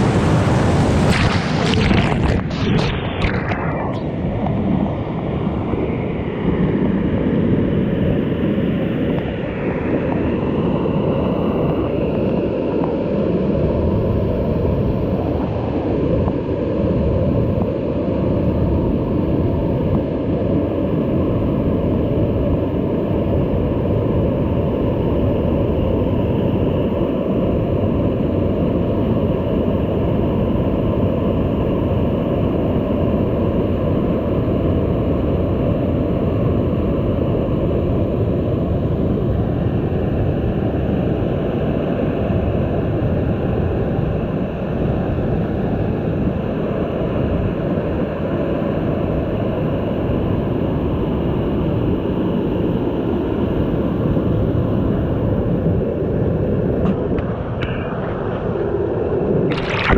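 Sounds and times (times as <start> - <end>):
waterfall rushing: 0.0 - 4.0.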